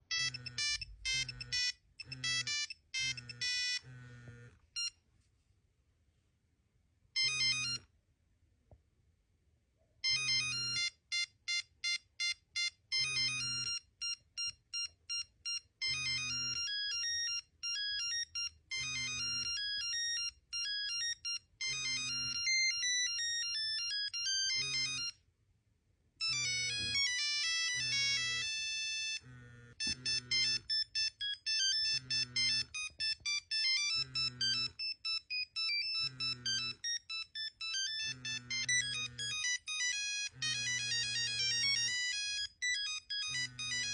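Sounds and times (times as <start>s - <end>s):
phone ringtone melodies: 0.0s - 5.0s, 7.2s - 7.9s, 10.0s - 25.2s, 26.2s - 43.9s.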